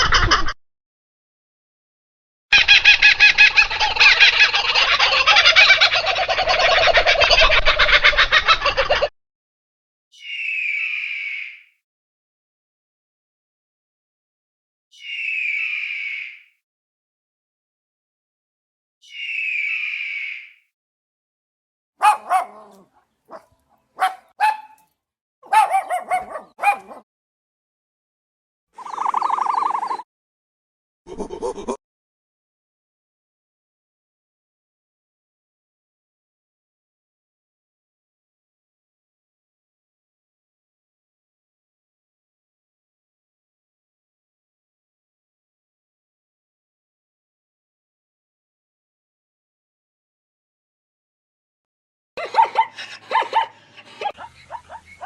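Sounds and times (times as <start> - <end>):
dog barking and yipping: 22.0 - 27.0, 52.2 - 55.0.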